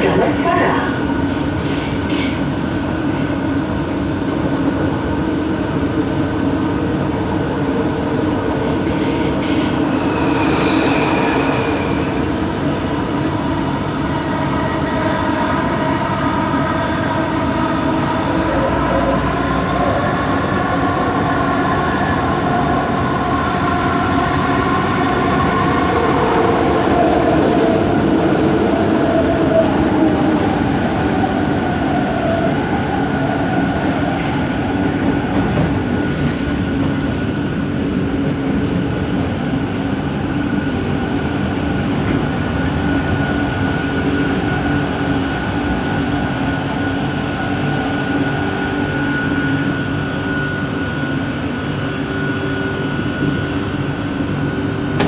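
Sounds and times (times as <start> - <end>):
train rumble: 0.0 - 55.0.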